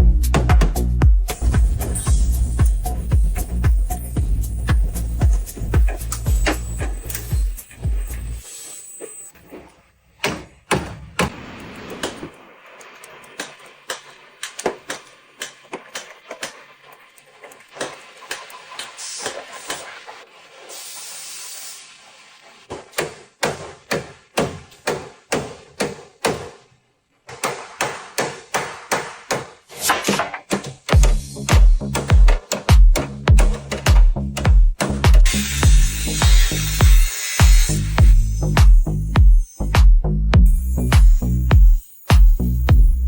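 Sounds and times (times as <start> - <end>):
short hiss: 18.4 - 22.6
sharp knocks and taps: 30.5 - 35.3.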